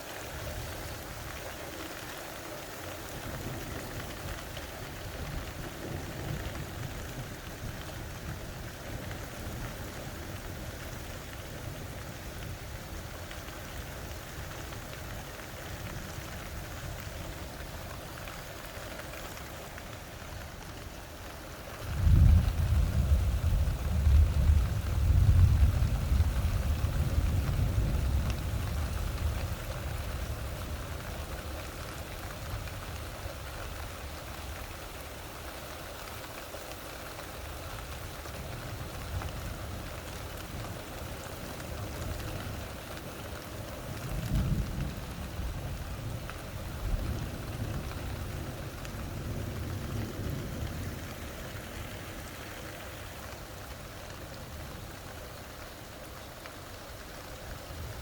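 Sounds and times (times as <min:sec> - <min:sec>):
steady rain: 0:00.0 - 0:58.0
thunder rumbling: 0:20.2 - 0:35.2, 0:37.4 - 0:55.9.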